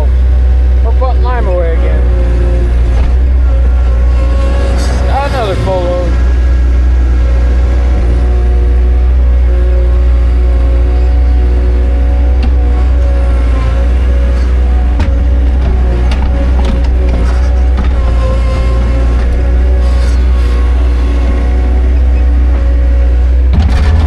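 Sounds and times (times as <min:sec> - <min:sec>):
farm vehicle engine droning: 0:00.0 - 0:24.0
clicks and knocks: 0:15.0 - 0:19.4.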